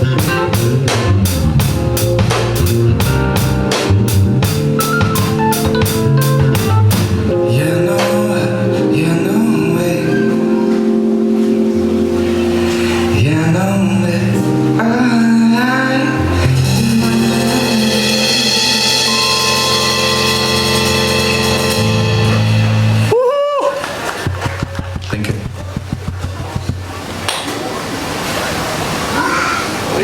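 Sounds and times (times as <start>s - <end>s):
pop band playing: 0.0s - 27.0s
person singing: 7.3s - 11.8s, 12.5s - 23.8s.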